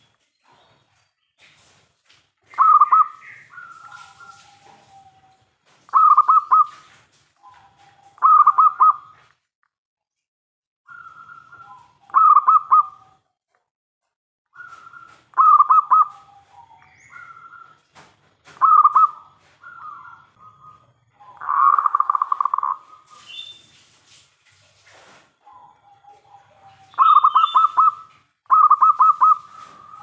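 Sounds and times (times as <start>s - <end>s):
dove cooing: 2.5s - 9.2s, 10.9s - 13.2s, 14.6s - 17.8s, 18.6s - 23.2s, 25.4s - 30.0s.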